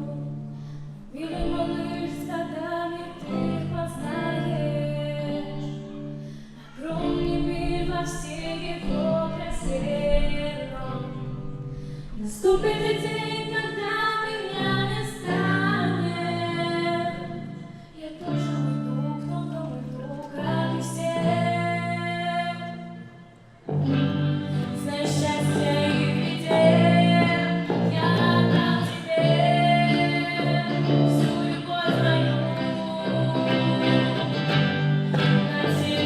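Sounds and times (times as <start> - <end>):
person singing long notes: 12.2 - 36.0
instrumental accompaniment: 14.7 - 36.0.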